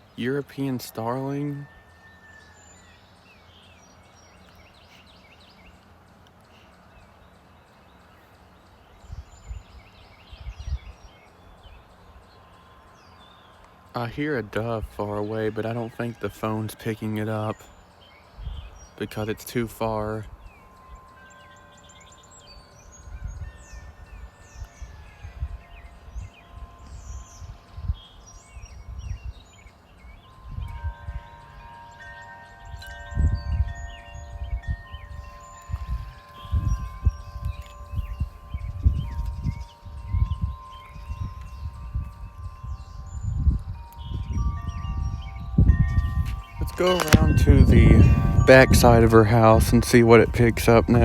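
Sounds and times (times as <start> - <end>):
long steady ringing tones: 0.0 - 51.0
songbirds chirping and whistling: 0.0 - 51.0
steady outdoor hiss: 0.0 - 51.0
wind rumble on microphone: 9.0 - 12.0, 18.3 - 18.9, 22.6 - 51.0
thumps on microphone: 46.3 - 47.6.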